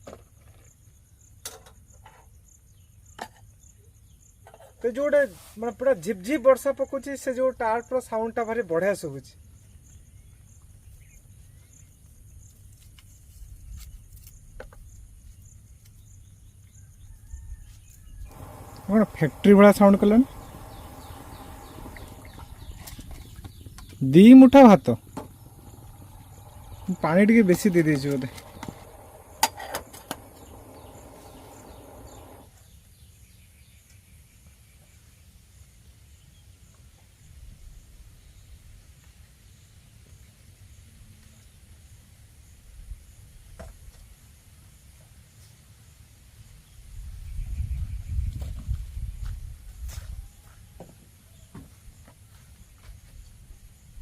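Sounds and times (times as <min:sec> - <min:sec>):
outdoor ambience: 0:00.0 - 0:54.0
insect chirping: 0:09.4 - 0:17.2, 0:18.3 - 0:32.5
low steady hum: 0:18.3 - 0:32.5
low steady rumble: 0:18.3 - 0:32.5.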